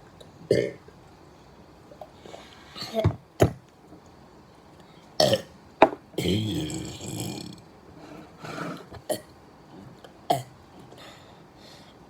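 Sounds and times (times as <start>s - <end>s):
person burping: 0.5s - 0.8s, 5.2s - 5.5s, 6.2s - 7.6s.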